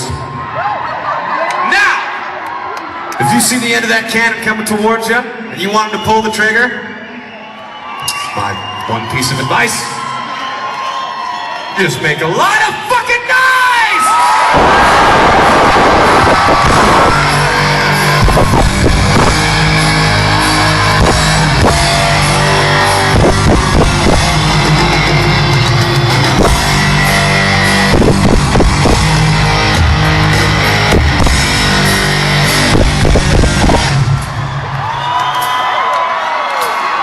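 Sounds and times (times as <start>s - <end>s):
loud rock music: 14.2s - 35.0s
burst of noise: 14.4s - 35.0s.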